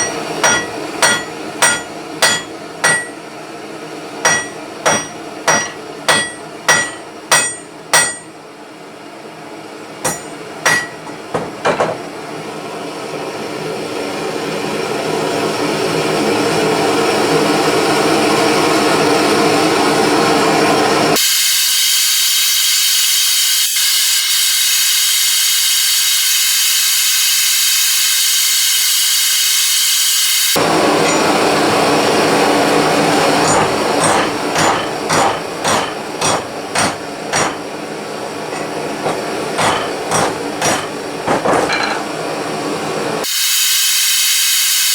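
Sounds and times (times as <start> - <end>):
hammer ringing on metal bar: 0.0 - 3.2, 4.3 - 8.3, 10.1 - 12.0, 33.4 - 37.6, 39.6 - 40.9
blow lamp flame hissing: 21.2 - 30.8, 43.2 - 44.9.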